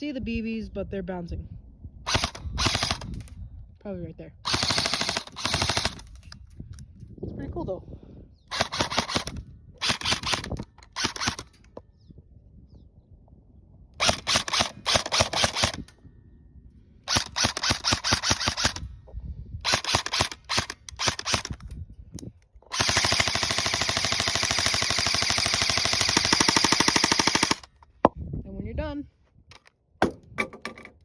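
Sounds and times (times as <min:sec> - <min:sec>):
airsoft gun firing bursts: 0:02.1 - 0:03.2, 0:04.5 - 0:06.2, 0:08.5 - 0:11.5, 0:14.0 - 0:15.8, 0:17.1 - 0:18.8, 0:19.6 - 0:21.6, 0:22.7 - 0:27.7.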